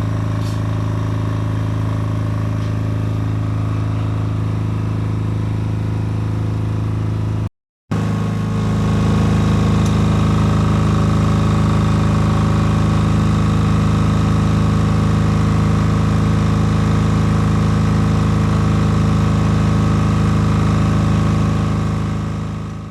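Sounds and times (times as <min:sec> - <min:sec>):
generator engine drone: 0:00.0 - 0:22.9.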